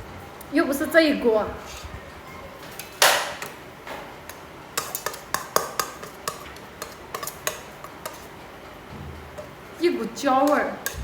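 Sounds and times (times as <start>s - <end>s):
utensil knocking against pot: 3.0s - 8.2s, 10.5s - 11.0s.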